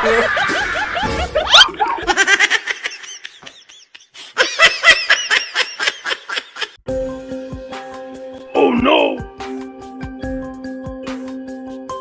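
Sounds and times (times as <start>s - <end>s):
person laughing hard: 0.0s - 6.8s.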